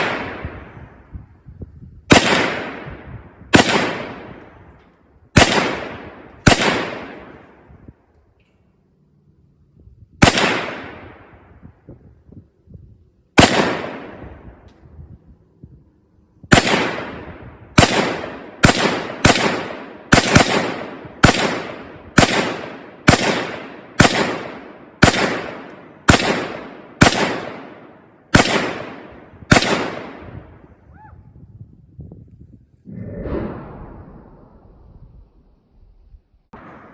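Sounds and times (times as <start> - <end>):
rifle shots with echo: 0.0 - 1.1, 2.1 - 4.7, 5.3 - 7.7, 10.2 - 11.5, 13.4 - 14.6, 16.5 - 30.7, 33.0 - 34.8, 36.6 - 36.9.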